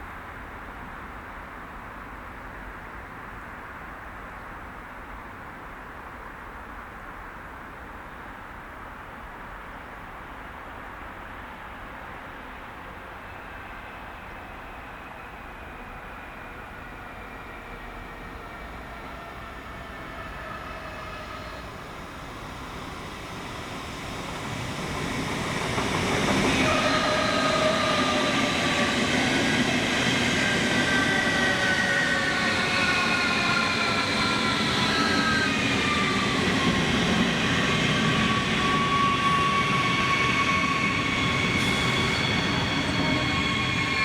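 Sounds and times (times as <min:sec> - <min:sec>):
train rolling rumble: 0:12.0 - 0:44.0
electric train traction whine: 0:19.3 - 0:44.0.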